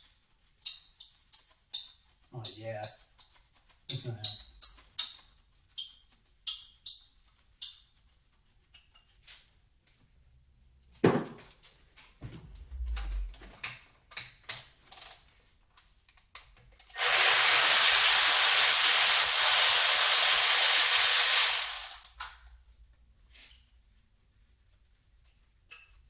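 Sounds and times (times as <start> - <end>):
loud steady hiss: 16.9 - 22.1.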